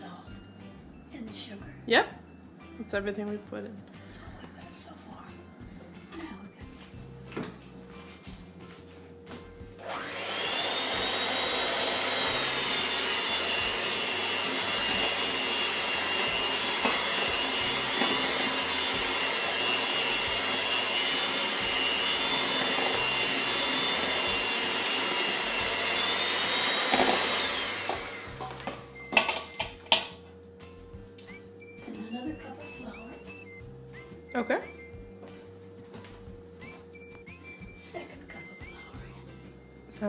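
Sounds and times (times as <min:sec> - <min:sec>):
electric mixer motor whine: 0:09.8 - 0:30.0, 0:31.3 - 0:35.0.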